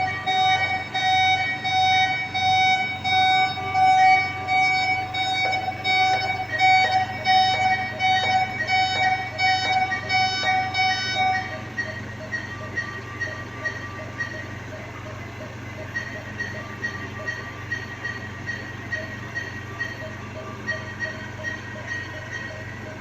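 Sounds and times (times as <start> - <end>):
electronic alarm beeps: 0.0 - 23.0.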